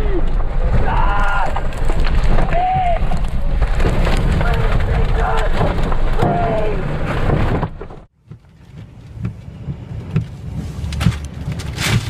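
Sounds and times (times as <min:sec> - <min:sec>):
storm wind and rain on a vehicle: 0:00.0 - 0:12.0
sharp knocks and patters: 0:00.2 - 0:12.0.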